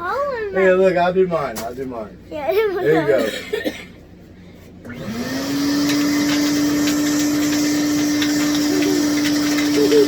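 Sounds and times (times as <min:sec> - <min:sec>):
shop vacuum motor running: 0:04.8 - 0:10.0.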